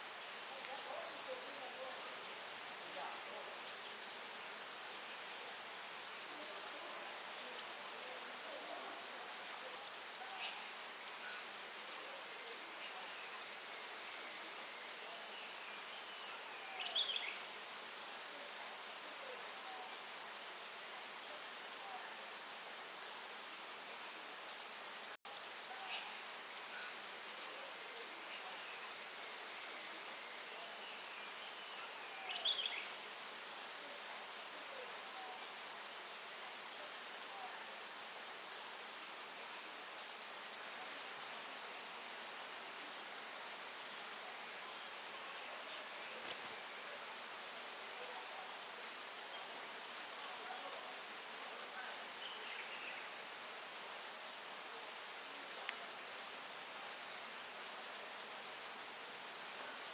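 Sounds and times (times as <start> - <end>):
insects trilling: 0.0 - 9.8
soft hiss: 0.0 - 59.9.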